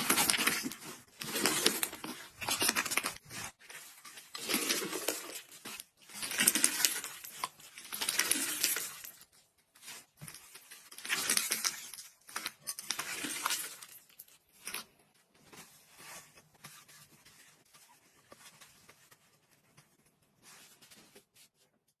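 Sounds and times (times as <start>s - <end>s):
slime crackling and crunching: 0.0s - 15.0s.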